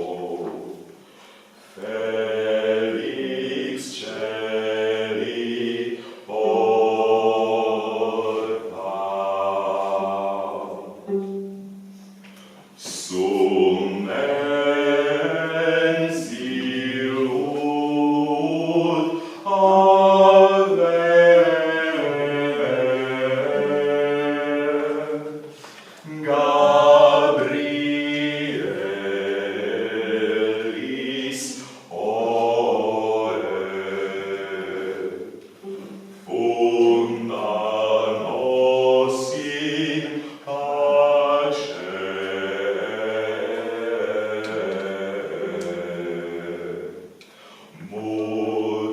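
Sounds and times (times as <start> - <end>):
chant-like singing in harmony: 0.0 - 12.0, 12.6 - 48.9.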